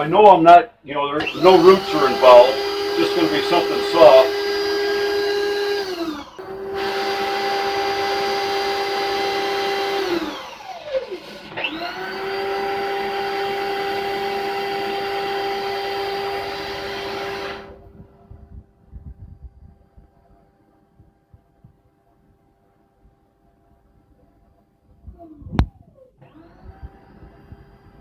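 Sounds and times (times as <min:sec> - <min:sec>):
drain cleaning machine spinning: 0:01.1 - 0:19.2, 0:26.2 - 0:28.0.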